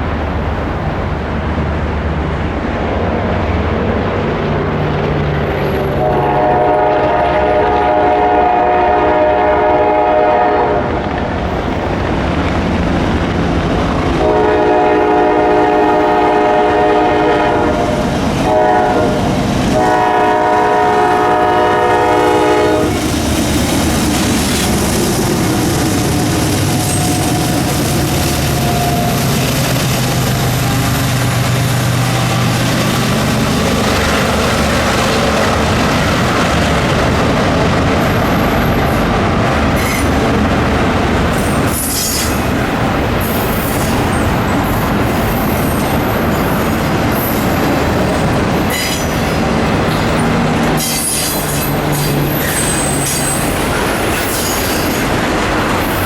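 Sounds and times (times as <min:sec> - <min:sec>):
low rumble of moving train: 0:00.0 - 0:56.0
train air horn blasts: 0:05.8 - 0:10.9, 0:14.2 - 0:23.0.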